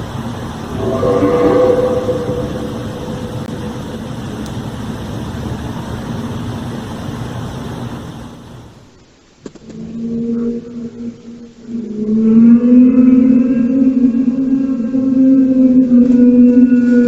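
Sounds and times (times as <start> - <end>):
faint droning hum: 0.0 - 6.8
low rumble: 0.4 - 5.2.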